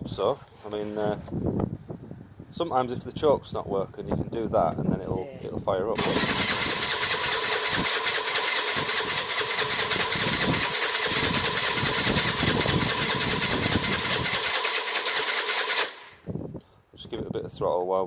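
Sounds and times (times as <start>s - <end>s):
electric starter cranking engine: 6.0s - 16.3s.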